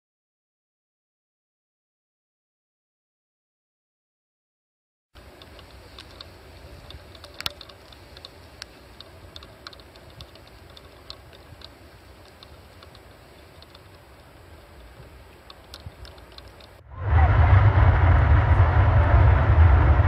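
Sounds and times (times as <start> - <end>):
sharp ticks and clicks: 5.2 - 16.8
geyser low rumble: 5.2 - 20.0.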